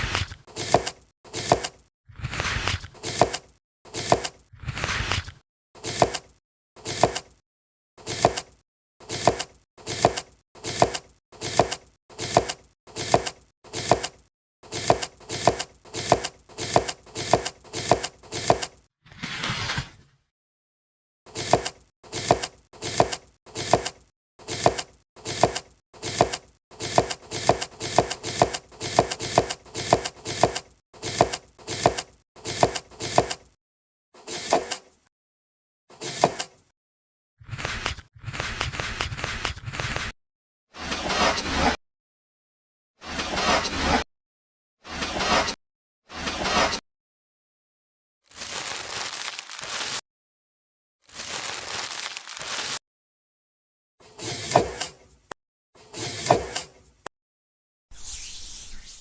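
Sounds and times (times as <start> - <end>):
crunching strokes in sand: 48.3 - 50.0, 51.1 - 52.8.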